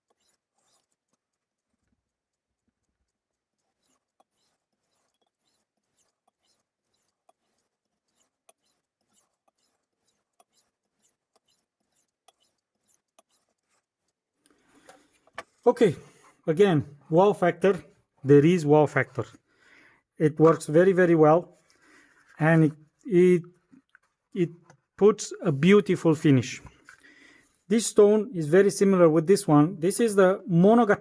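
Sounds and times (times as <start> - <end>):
knife scraping on whetstone: 0.0 - 1.2, 3.5 - 14.4.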